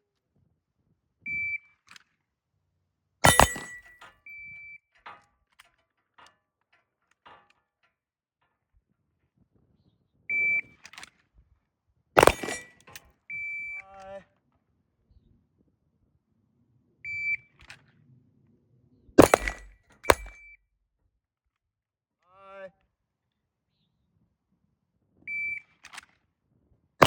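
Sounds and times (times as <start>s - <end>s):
pistol shot: 3.3s - 3.8s, 12.2s - 12.7s, 19.2s - 20.3s.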